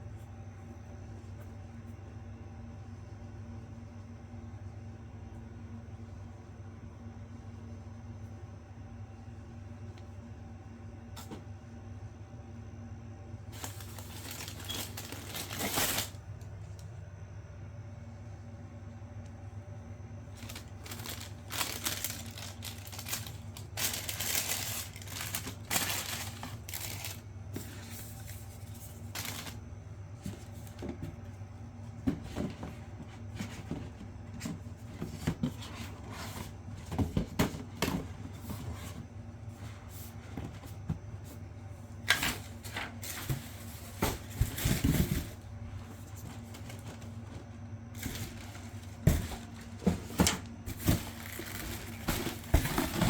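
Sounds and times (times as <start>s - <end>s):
steady low hum: 0.0s - 53.0s
rustling and knocking of objects: 13.5s - 16.2s, 20.3s - 29.6s, 30.2s - 53.0s.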